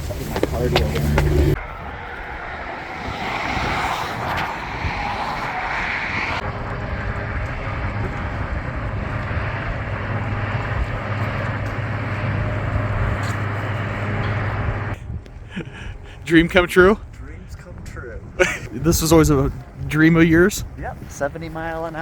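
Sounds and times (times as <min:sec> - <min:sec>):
highway traffic rumble: 0:00.0 - 0:22.0.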